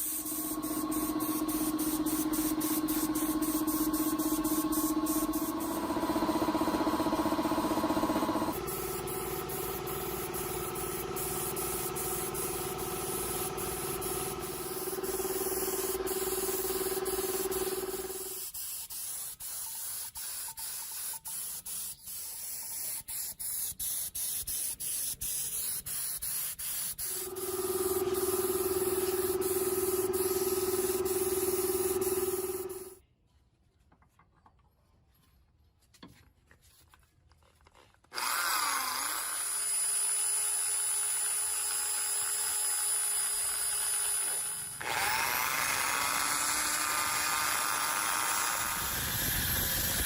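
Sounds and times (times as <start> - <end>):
spray hissing: 0.0 - 6.0, 8.5 - 32.9
spray gun motor hum: 0.0 - 18.6, 27.0 - 33.0, 40.7 - 50.0.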